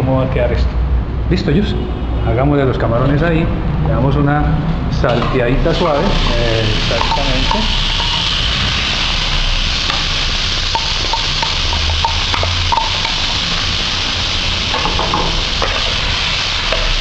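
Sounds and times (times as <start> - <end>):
shrimp sizzling in a pan: 5.7 - 17.0
stirring ticks and scrapes: 5.8 - 9.1, 9.8 - 15.0.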